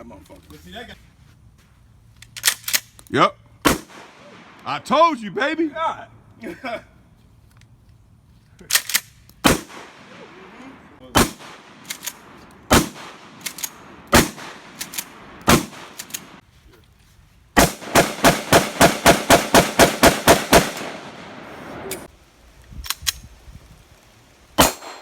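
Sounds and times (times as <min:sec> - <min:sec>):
gunshots: 0:03.6 - 0:04.8, 0:08.8 - 0:16.4, 0:17.6 - 0:22.1, 0:24.6 - 0:25.0.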